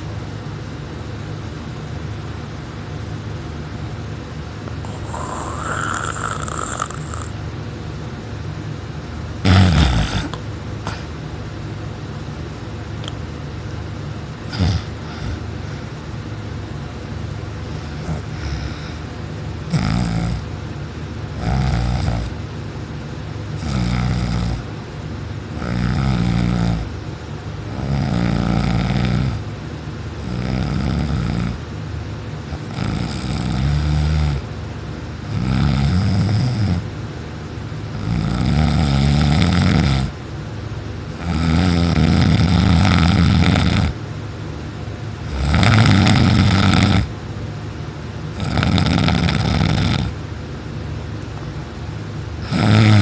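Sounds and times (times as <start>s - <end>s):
person snoring loudly: 4.8s - 7.4s, 9.4s - 11.1s, 14.5s - 15.4s, 17.7s - 19.0s, 19.7s - 20.5s, 21.4s - 22.4s, 23.6s - 24.6s, 25.6s - 26.9s, 27.7s - 29.4s, 30.2s - 31.6s, 32.6s - 34.4s, 35.3s - 36.8s, 38.0s - 40.1s, 41.2s - 44.0s, 45.3s - 47.1s, 48.4s - 50.2s, 52.4s - 53.0s.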